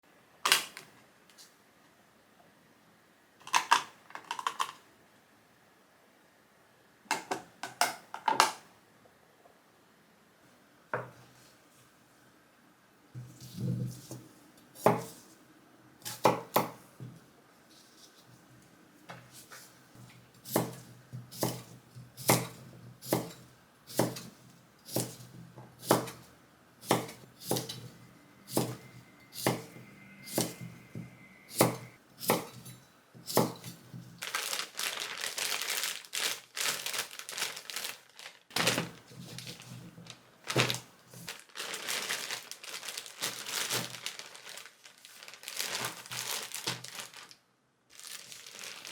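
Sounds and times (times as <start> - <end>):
knife chopping on cutting board: 14.8 - 15.1, 20.4 - 27.9, 28.5 - 30.7, 31.5 - 34.0
crinkling and rustling: 33.4 - 48.9.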